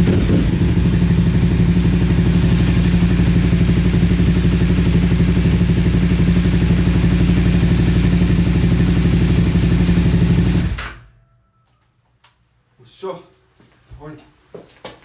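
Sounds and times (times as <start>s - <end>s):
motorcycle engine running: 0.0s - 10.8s.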